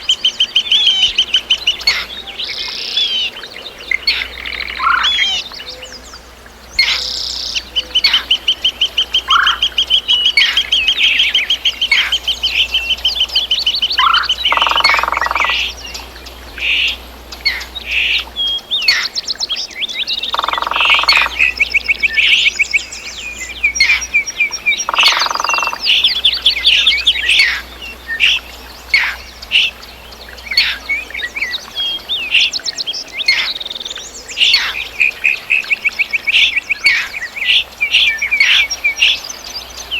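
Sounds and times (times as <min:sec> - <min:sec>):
songbirds singing: 0:00.0 - 0:39.9
low bird call: 0:06.8 - 0:19.4, 0:20.2 - 0:39.3
fast bird trill: 0:13.9 - 0:15.7, 0:20.2 - 0:22.7, 0:23.6 - 0:27.6.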